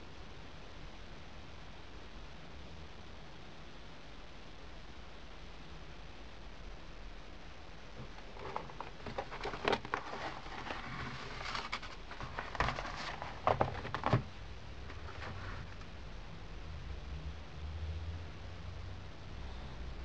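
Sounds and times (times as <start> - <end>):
packaging rustling and crinkling: 8.0 - 15.9.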